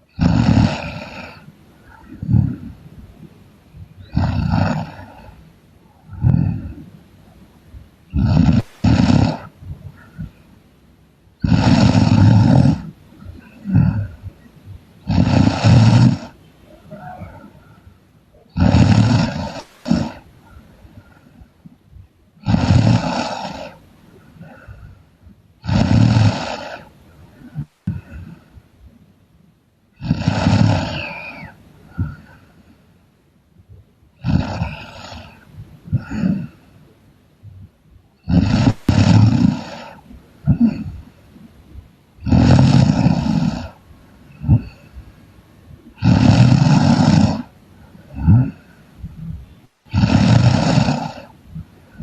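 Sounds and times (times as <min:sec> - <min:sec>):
faint breathing: 0:00.0 - 0:29.1, 0:29.9 - 0:33.2, 0:34.1 - 0:52.0
person snoring loudly: 0:00.1 - 0:02.7, 0:04.0 - 0:05.4, 0:06.0 - 0:06.8, 0:08.1 - 0:10.3, 0:11.4 - 0:14.2, 0:15.0 - 0:17.6, 0:18.5 - 0:20.2, 0:22.4 - 0:23.8, 0:25.6 - 0:28.4, 0:30.0 - 0:32.4, 0:34.2 - 0:36.6, 0:38.2 - 0:41.0, 0:42.2 - 0:44.9, 0:46.0 - 0:47.5, 0:48.1 - 0:48.8, 0:49.9 - 0:52.0.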